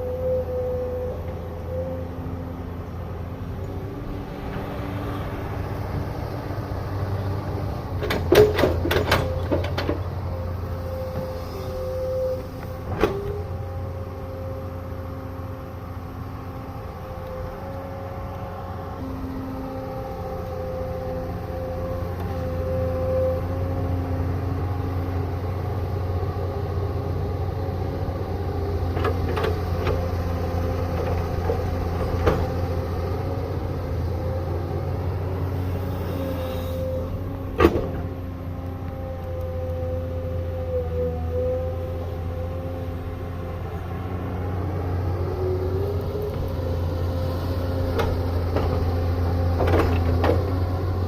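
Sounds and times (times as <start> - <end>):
excavator diesel engine running: 0.0 - 51.0
excavator bucket clanks: 8.0 - 10.0
wavering hydraulic whine: 9.2 - 51.0.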